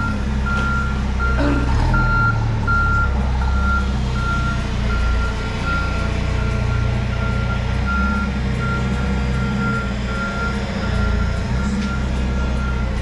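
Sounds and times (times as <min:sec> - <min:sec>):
engine running: 0:00.0 - 0:13.0
reversing alarm beeping: 0:00.0 - 0:13.0.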